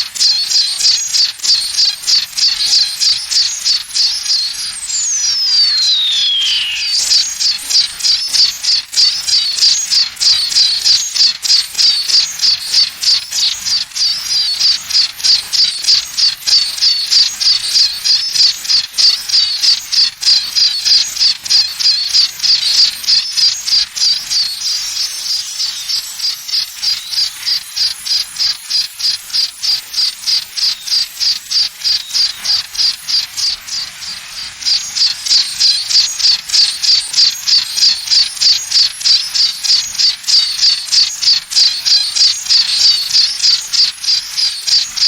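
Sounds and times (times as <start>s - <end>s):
high-pitched pulsing chirps: 0.0s - 18.7s.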